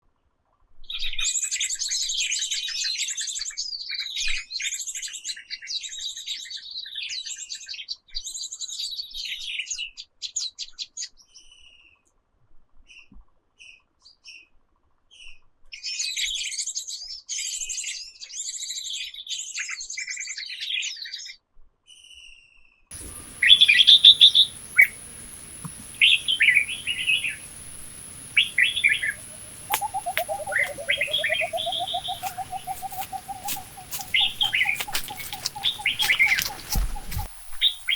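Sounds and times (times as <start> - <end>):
loud bird calls: 22.9 - 37.9
small birds chirping: 22.9 - 37.9
steady hiss: 22.9 - 37.9.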